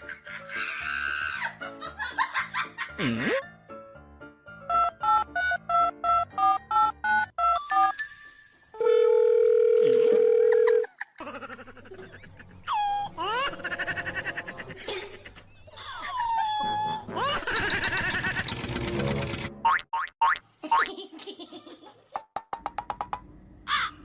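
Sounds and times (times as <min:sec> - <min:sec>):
telephone ringing tone: 0:08.8 - 0:10.8.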